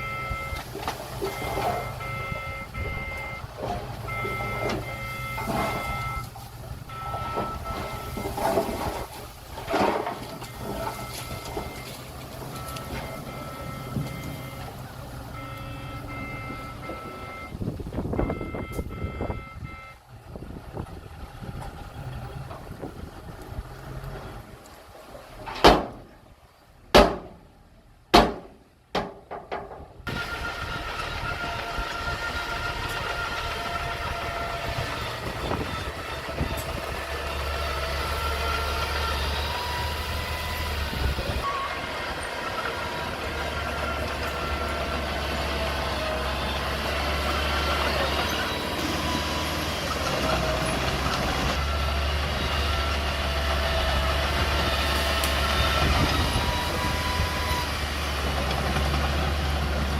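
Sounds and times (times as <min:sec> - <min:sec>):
bulldozer engine hum: 0:00.0 - 0:59.9
steel tracks squealing: 0:30.1 - 0:59.9.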